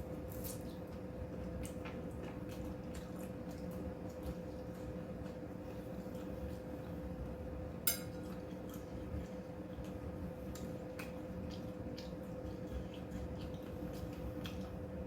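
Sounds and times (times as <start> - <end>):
steady low hum: 0.0 - 15.0
tableware clink: 7.9 - 8.4.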